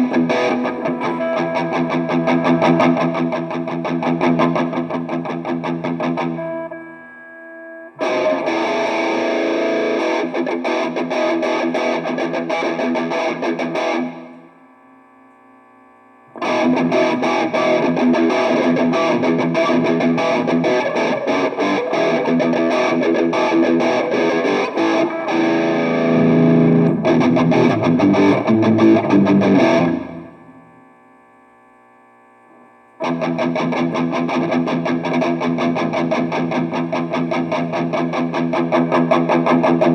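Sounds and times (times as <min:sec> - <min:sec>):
distorted electric guitar riffing: 0:00.0 - 0:14.5, 0:16.4 - 0:30.8, 0:33.0 - 0:39.9
faint guitar ringing: 0:00.0 - 0:15.3, 0:16.4 - 0:31.4.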